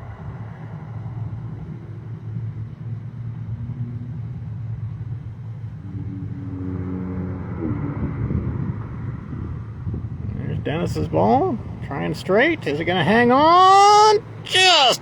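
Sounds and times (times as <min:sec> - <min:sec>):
faint steady tones: 0:00.0 - 0:08.0
low rumble: 0:00.0 - 0:10.7.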